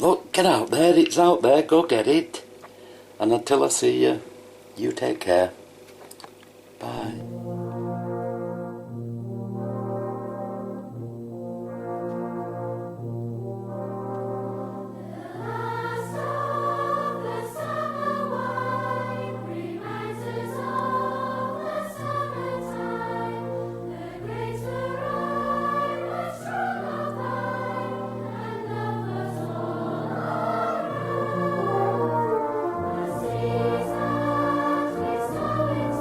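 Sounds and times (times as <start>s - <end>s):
low musical accompaniment: 6.8s - 36.0s
choir singing sustained notes: 7.2s - 36.0s.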